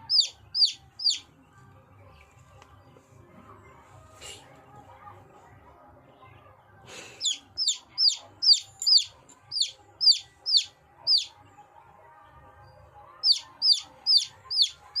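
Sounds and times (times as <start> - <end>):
chick peeping: 0.0 - 1.3, 7.2 - 11.4, 13.2 - 15.0.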